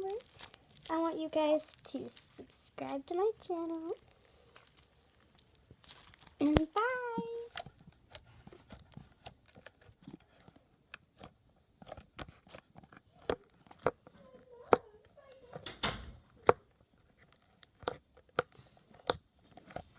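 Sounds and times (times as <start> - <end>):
slime squelching by hand: 0.0 - 15.6.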